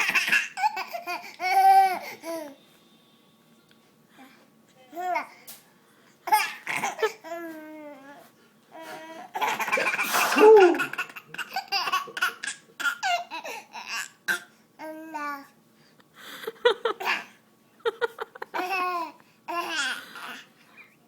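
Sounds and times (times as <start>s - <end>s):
baby laughing: 0.0s - 2.5s, 6.3s - 7.4s, 9.3s - 14.1s, 18.0s - 20.0s
man sneezing or blowing nose: 9.8s - 10.9s
baby babbling: 10.4s - 11.0s, 18.6s - 20.5s.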